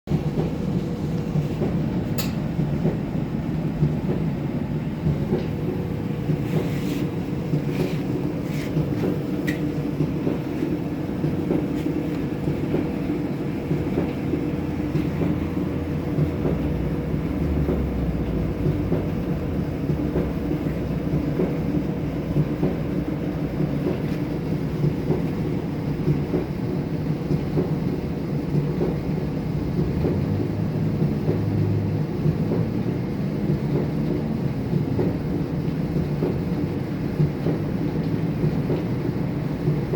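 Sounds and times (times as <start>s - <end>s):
clothes dryer drum rumbling: 0.1s - 39.9s
constant hum: 0.1s - 39.9s.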